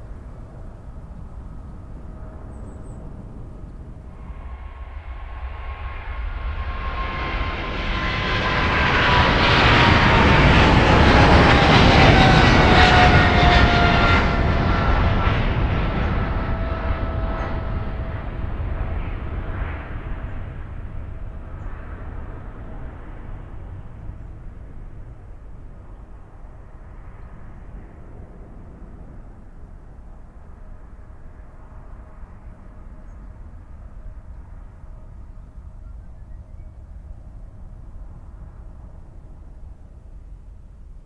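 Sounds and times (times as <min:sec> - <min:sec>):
engine whine sliding down: 0:00.0 - 0:19.3
jet engines roaring: 0:00.0 - 0:30.0.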